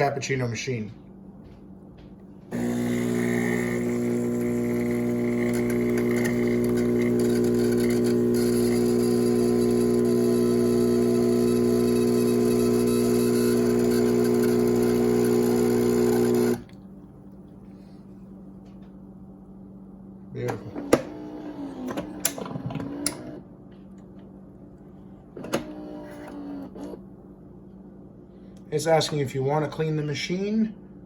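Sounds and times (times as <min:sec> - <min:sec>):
coffee machine humming and hissing: 0:02.5 - 0:16.8, 0:20.4 - 0:23.4, 0:25.4 - 0:27.0.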